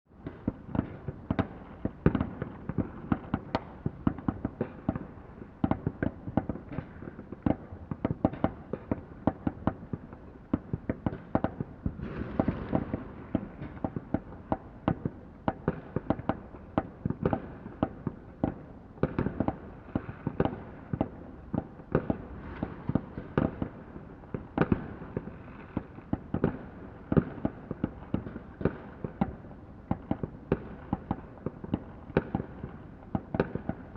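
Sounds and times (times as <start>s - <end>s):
fireworks bangs and pops: 0.1s - 33.9s.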